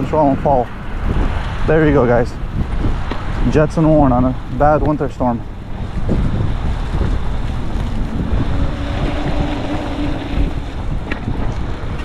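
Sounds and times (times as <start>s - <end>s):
wind rushing over microphone: 0.0s - 12.0s
low rumble: 5.4s - 11.8s.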